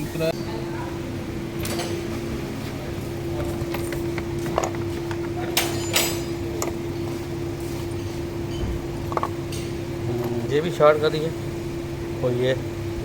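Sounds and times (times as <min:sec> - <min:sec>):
steady low hum: 0:00.0 - 0:13.0
metal objects clinking: 0:03.4 - 0:09.8.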